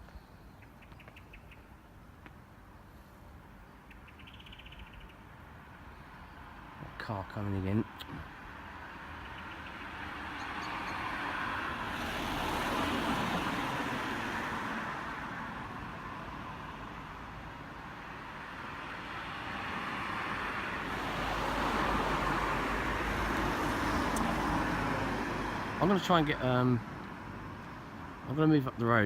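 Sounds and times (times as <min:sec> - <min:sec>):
car passing: 0:07.5 - 0:28.2.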